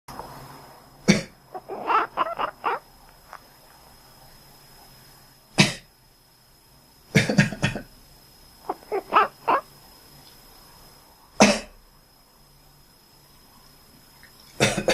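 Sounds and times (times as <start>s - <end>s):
person coughing: 7.2s - 7.9s, 11.4s - 11.8s, 14.6s - 14.9s.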